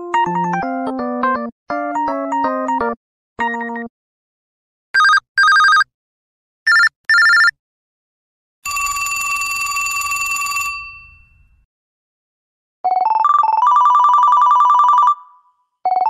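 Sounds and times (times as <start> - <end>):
mobile phone ringtone: 5.0 - 5.9, 6.7 - 7.6, 8.6 - 11.3, 12.9 - 16.0.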